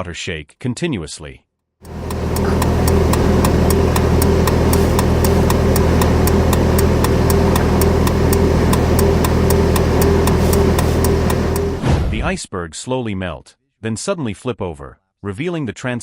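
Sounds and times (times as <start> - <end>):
motor droning: 1.8 - 11.8
rapid regular ticking: 1.8 - 11.8.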